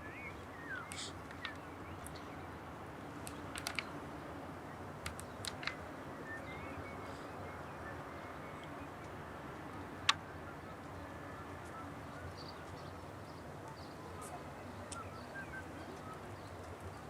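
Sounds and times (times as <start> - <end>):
low background noise: 0.0 - 17.0
light clicks and taps: 3.2 - 3.9.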